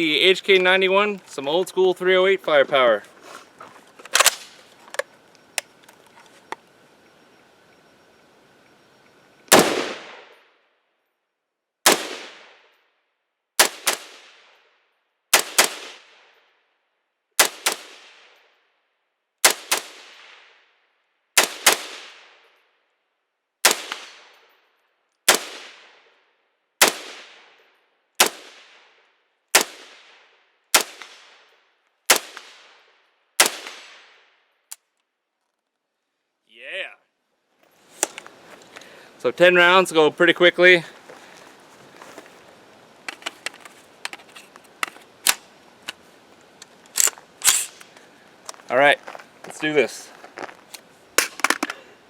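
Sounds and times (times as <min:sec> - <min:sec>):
rifle shots: 0:04.1 - 0:04.6, 0:09.5 - 0:10.4, 0:11.8 - 0:12.6, 0:13.6 - 0:14.6, 0:15.3 - 0:16.3, 0:17.4 - 0:18.4, 0:19.4 - 0:20.5, 0:21.4 - 0:22.4, 0:23.6 - 0:24.4, 0:25.3 - 0:26.0, 0:26.8 - 0:27.5, 0:28.2 - 0:28.8, 0:29.5 - 0:31.4, 0:32.1 - 0:32.8, 0:33.4 - 0:34.2.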